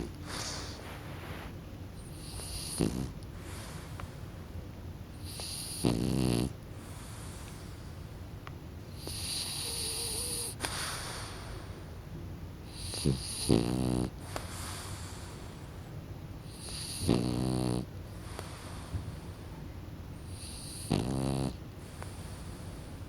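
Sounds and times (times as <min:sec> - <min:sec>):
dog snoring: 0:00.0 - 0:00.8, 0:02.0 - 0:03.7, 0:05.2 - 0:07.6, 0:08.9 - 0:11.5, 0:12.6 - 0:15.6, 0:16.4 - 0:18.9, 0:20.2 - 0:22.9.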